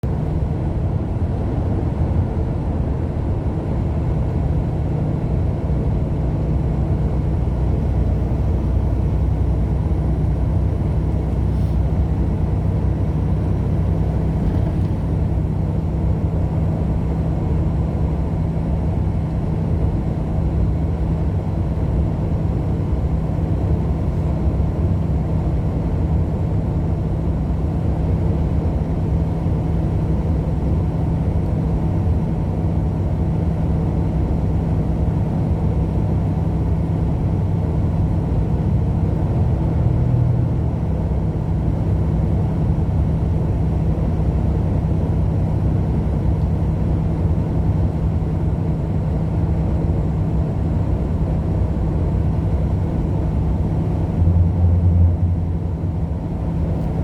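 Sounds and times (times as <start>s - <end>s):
car engine and road noise: 0.0s - 57.0s
steady low hum: 21.9s - 57.0s.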